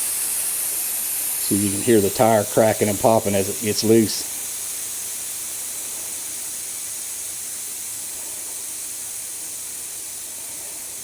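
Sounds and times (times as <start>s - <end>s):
air hissing from a tire: 0.0s - 11.0s.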